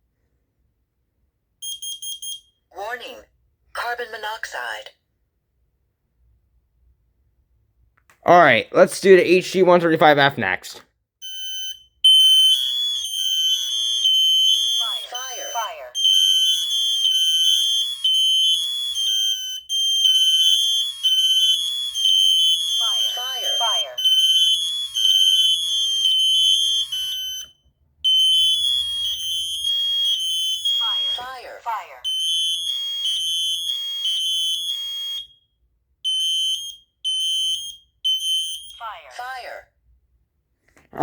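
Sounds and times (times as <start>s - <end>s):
smoke alarm beeping: 1.6s - 2.7s, 11.2s - 39.0s
spoken fire warning: 2.7s - 4.9s, 8.2s - 10.8s, 14.4s - 17.6s, 21.5s - 27.0s, 30.5s - 32.2s, 38.7s - 39.7s.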